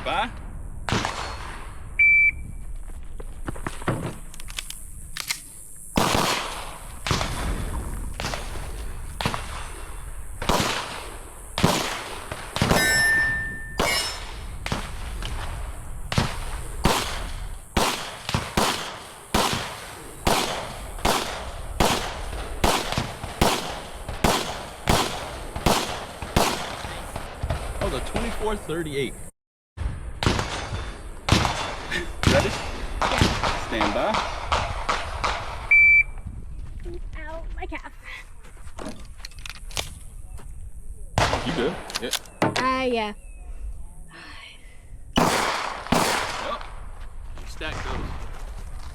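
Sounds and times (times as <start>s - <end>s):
pistol shots: 6.0s - 7.5s, 10.5s - 11.0s, 11.6s - 15.0s, 16.1s - 27.4s, 45.2s - 46.7s
steel target ringing: 12.7s - 14.4s.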